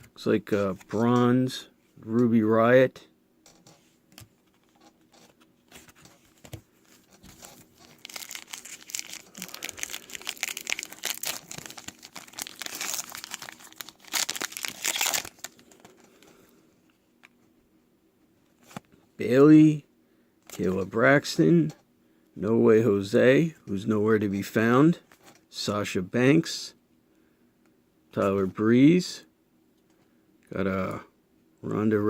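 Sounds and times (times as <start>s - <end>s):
foil wrapper tearing and crinkling: 7.4s - 15.8s.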